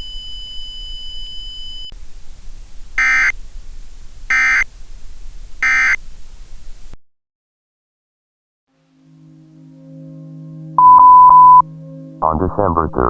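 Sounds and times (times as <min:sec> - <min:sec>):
faint hiss: 0:02.0 - 0:07.0.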